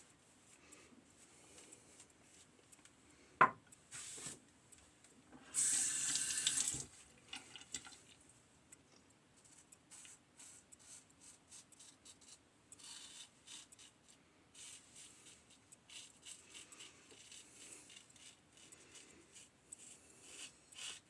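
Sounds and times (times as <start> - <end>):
razor scraping stubble: 15.0 - 21.0.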